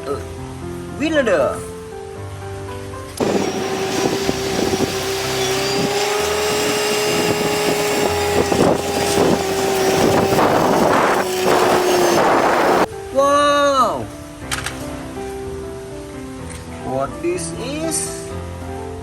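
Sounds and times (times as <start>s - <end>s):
rushing hiss: 3.2s - 12.9s
small motor whining: 3.2s - 12.9s.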